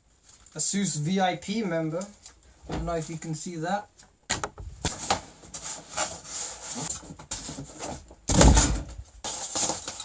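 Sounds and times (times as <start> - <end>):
cardboard rubbing and scraping: 4.8 - 10.0.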